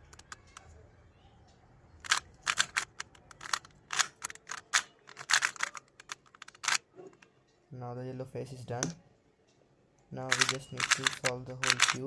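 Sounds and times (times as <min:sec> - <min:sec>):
puzzle cube plastic clicks: 0:00.0 - 0:00.7, 0:02.0 - 0:06.9, 0:10.3 - 0:12.0.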